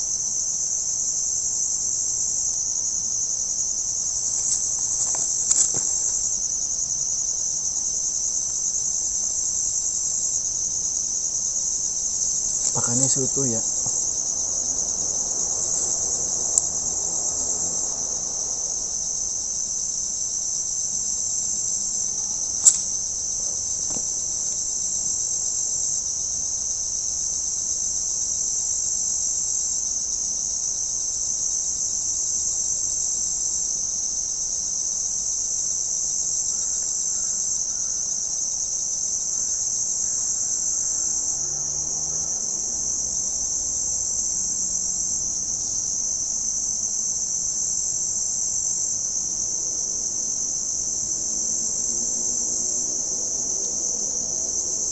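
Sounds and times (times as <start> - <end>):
high-pitched insect chorus: 0.0 - 54.9
sharp clicks: 22.6 - 22.9.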